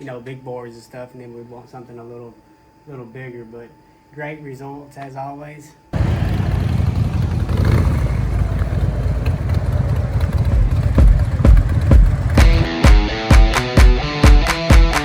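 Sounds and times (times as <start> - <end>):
motorcycle engine running: 6.0 - 12.7
rock music: 11.5 - 15.0.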